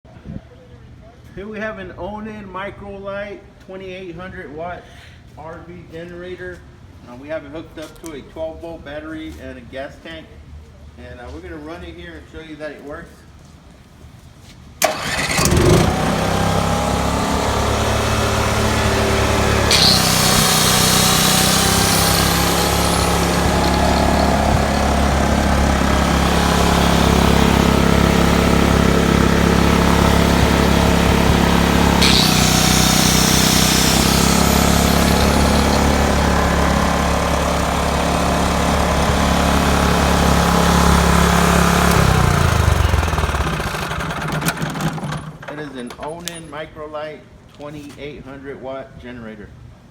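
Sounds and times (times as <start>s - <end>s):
generator running: 14.8s - 46.2s.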